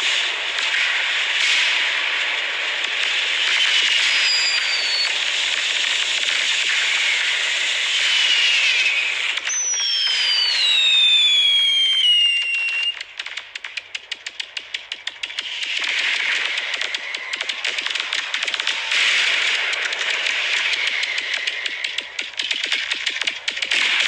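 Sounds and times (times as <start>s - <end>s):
fireworks crackling: 0.0s - 24.0s
high falling whistle: 3.9s - 5.2s, 8.1s - 13.0s.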